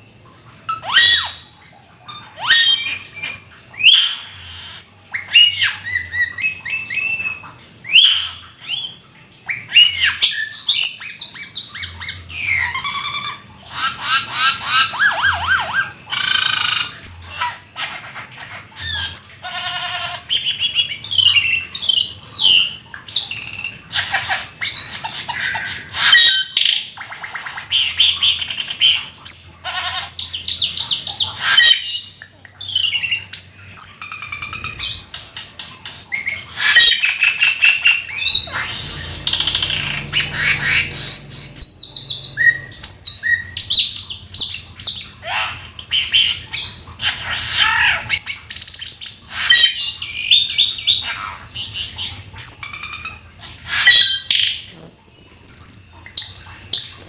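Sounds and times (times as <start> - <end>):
bird singing varied song: 18.8 - 57.0.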